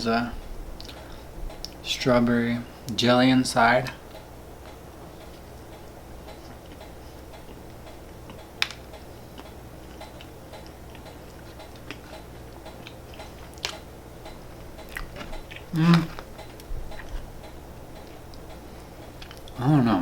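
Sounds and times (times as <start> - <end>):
steady low hum: 0.0 - 20.0
mouth chewing and crunching: 5.2 - 19.7.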